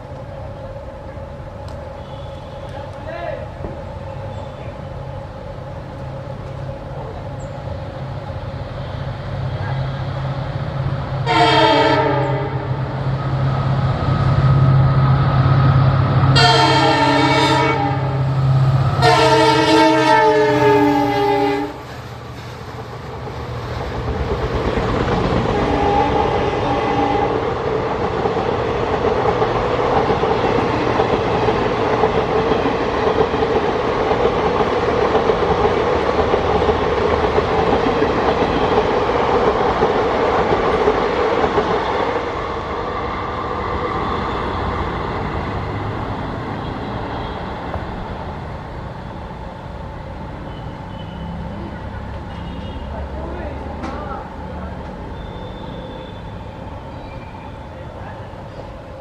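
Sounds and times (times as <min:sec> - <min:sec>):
passing train rumble and wheel clatter: 0:00.0 - 0:59.0
train horn blasts: 0:02.0 - 0:02.9, 0:11.2 - 0:12.8, 0:16.3 - 0:18.2, 0:18.9 - 0:21.8, 0:25.5 - 0:27.4, 0:55.2 - 0:56.6.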